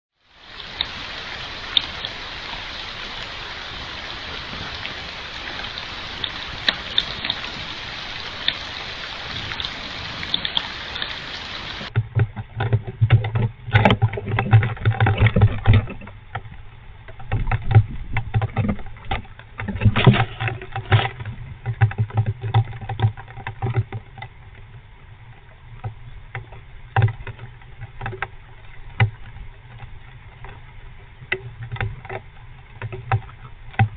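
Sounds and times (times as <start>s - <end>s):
heavy rain: 0.1s - 12.0s
low steady hum: 0.4s - 33.9s.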